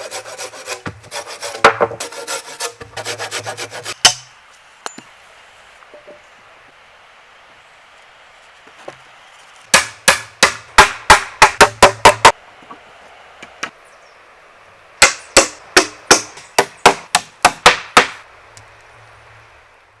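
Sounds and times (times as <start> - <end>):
sharp tool strikes: 3.9 - 4.3.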